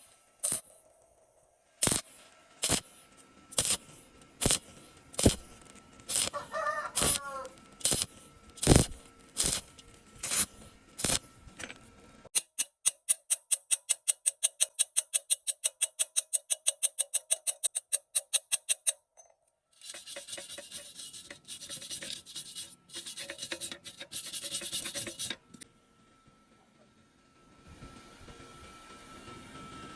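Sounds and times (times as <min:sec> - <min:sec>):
scraping strokes: 0:03.6 - 0:11.2, 0:19.8 - 0:25.6.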